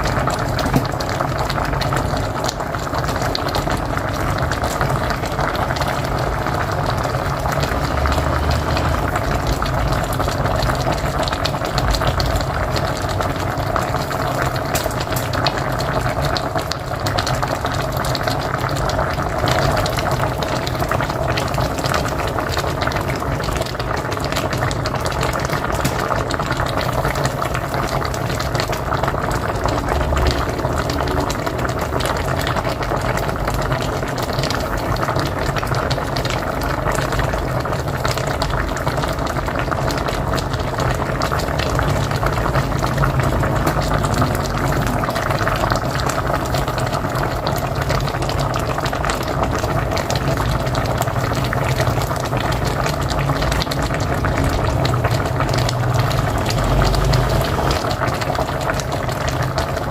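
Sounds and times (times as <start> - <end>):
pot boiling and bubbling: 0.0 - 59.9
low rumble: 5.1 - 13.2, 26.2 - 33.6.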